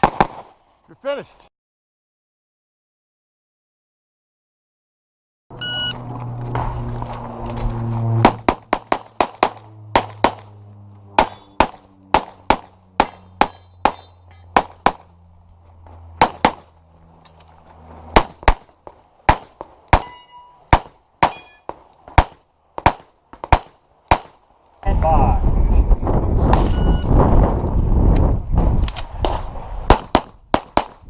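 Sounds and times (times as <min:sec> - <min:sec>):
pistol shots: 0:00.0 - 0:00.5, 0:08.2 - 0:10.5, 0:11.2 - 0:15.1, 0:16.2 - 0:16.7, 0:18.1 - 0:24.4, 0:28.9 - 0:31.0
steel targets ringing: 0:11.2 - 0:11.7, 0:13.0 - 0:14.6, 0:19.9 - 0:21.8.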